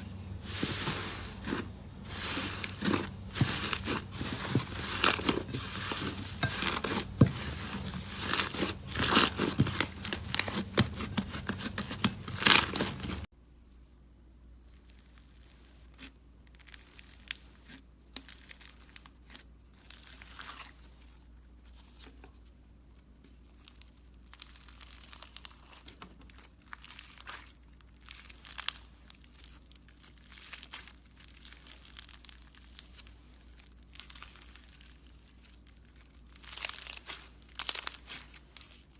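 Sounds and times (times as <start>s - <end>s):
slime crackling and popping: 23.5s - 38.9s.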